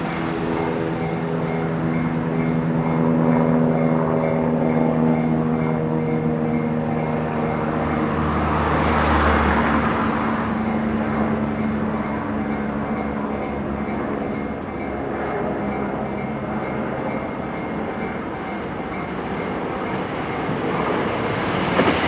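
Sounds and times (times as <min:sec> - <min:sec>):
electric train humming: 0:00.0 - 0:22.0.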